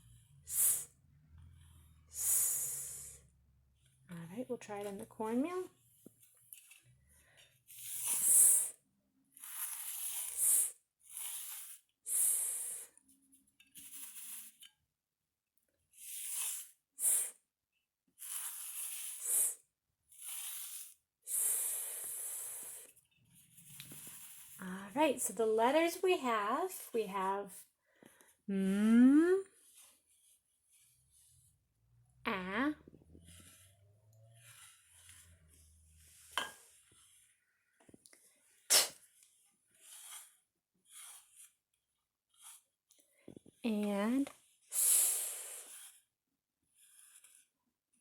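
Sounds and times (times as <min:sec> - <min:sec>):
person hissing sss sound: 0:00.5 - 0:00.9, 0:02.1 - 0:03.3, 0:07.8 - 0:08.8, 0:12.1 - 0:12.9, 0:16.1 - 0:17.4, 0:38.7 - 0:39.0, 0:44.7 - 0:45.9
person saying letter sound: 0:32.3 - 0:32.8.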